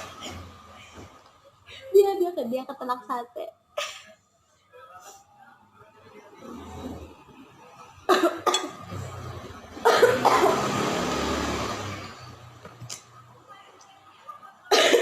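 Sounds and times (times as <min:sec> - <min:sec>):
person coughing hard: 0:08.1 - 0:08.8, 0:09.8 - 0:10.6, 0:14.7 - 0:15.0.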